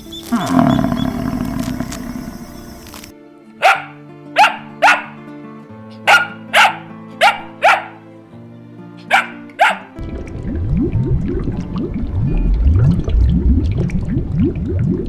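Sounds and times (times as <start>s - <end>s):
background music: 0.0s - 15.0s
dog barking: 3.6s - 5.2s, 6.0s - 8.0s, 9.1s - 10.0s.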